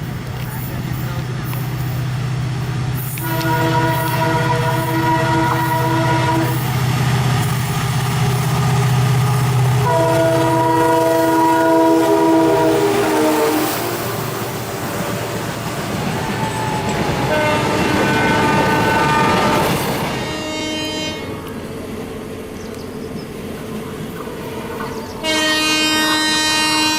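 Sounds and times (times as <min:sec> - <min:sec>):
passing train clatter: 0:00.0 - 0:26.9
locomotive air horn: 0:03.1 - 0:06.8, 0:09.6 - 0:15.4, 0:17.3 - 0:21.5, 0:24.4 - 0:26.9.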